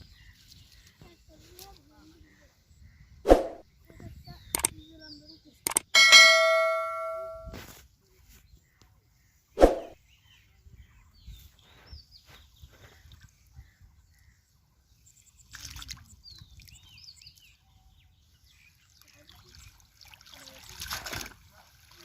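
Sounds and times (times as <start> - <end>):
birds chirping faintly: 0.0 - 7.5
sharp thud: 3.3 - 3.6, 9.6 - 10.0
ringing metallic ding: 5.9 - 7.6.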